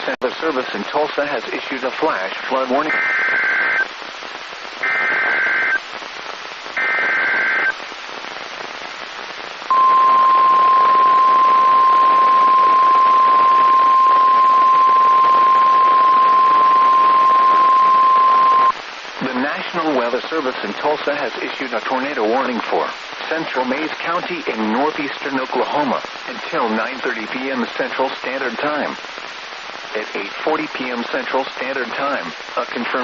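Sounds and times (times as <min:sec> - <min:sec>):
radio hiss: 0:00.0 - 0:33.0
digital header data bursts: 0:04.8 - 0:05.8, 0:09.7 - 0:18.7
steady warning alarm tone: 0:09.7 - 0:18.7.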